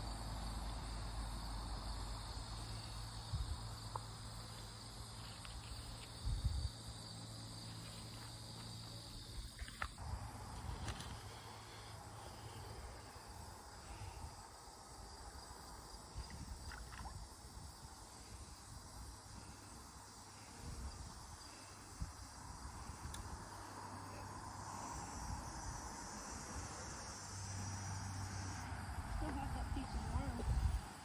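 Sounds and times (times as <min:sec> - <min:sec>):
high insect chorus: 0:00.0 - 0:31.0
low wind rumble: 0:06.2 - 0:07.1, 0:28.5 - 0:31.0.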